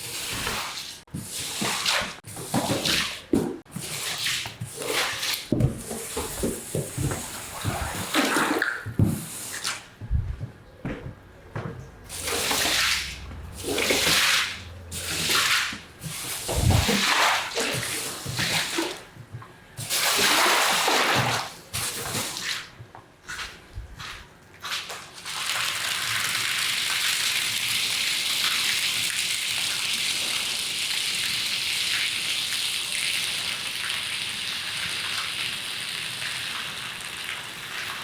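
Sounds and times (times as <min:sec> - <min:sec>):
water hissing over wet carpet: 0:12.1 - 0:19.0.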